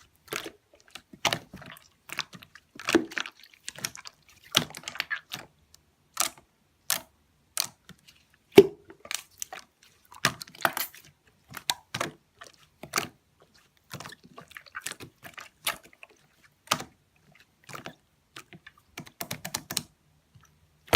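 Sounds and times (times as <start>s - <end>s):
slime squelching and popping: 0.0s - 20.9s.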